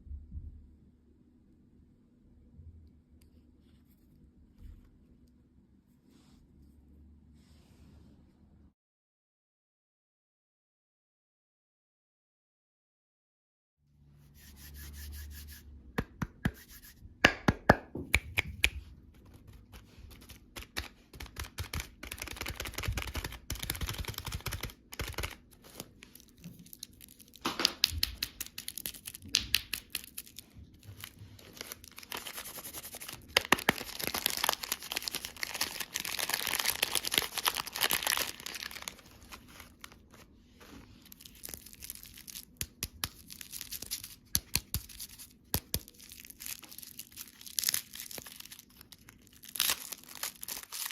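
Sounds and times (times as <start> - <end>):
sharp clicks and taps: 17.2 - 18.8
candy wrappers crinkling: 19.3 - 50.9.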